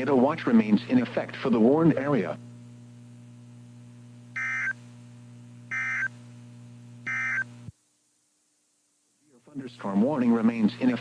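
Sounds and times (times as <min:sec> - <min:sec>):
low electrical hum: 0:00.0 - 0:11.0
short electronic beeps: 0:04.4 - 0:04.8, 0:05.7 - 0:06.1, 0:07.1 - 0:07.5.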